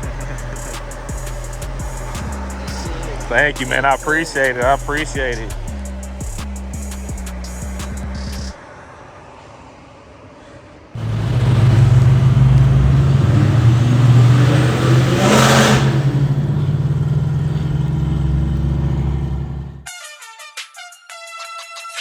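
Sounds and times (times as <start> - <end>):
race car engine running: 0.0 - 8.5, 11.0 - 19.9.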